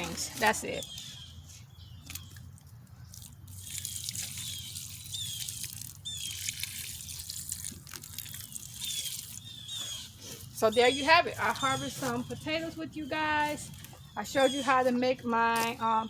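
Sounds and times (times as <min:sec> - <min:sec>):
water dripping and trickling: 0:02.0 - 0:12.9.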